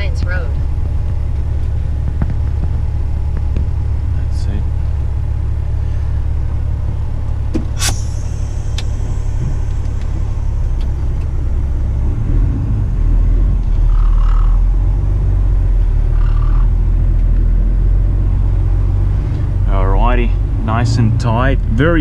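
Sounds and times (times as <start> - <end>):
truck diesel engine rumbling: 0.0 - 22.0
sharp click: 7.6 - 10.2
short air hiss: 7.7 - 10.4.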